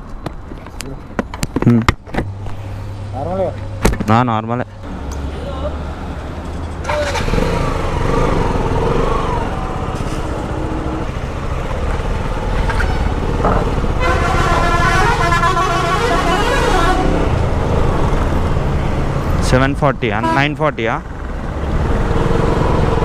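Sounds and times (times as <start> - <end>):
road noise: 0.0 - 23.0
motorcycle engine running: 6.9 - 14.8
vehicle horn: 13.9 - 17.4, 20.2 - 20.7.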